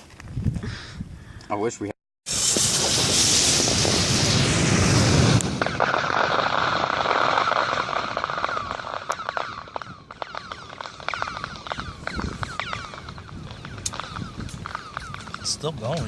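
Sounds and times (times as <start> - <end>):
loud rushing whoosh: 2.3 - 8.2.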